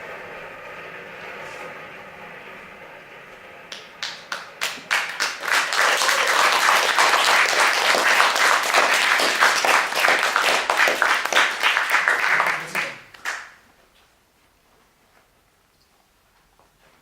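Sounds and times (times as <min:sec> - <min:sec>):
audience applauding: 0:03.7 - 0:13.6.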